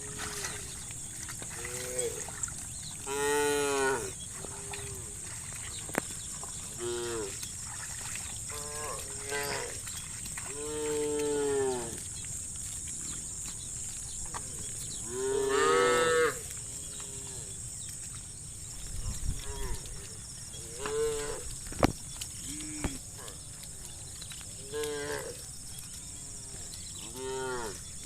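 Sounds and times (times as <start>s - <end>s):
cattle mooing: 15.1s - 16.4s.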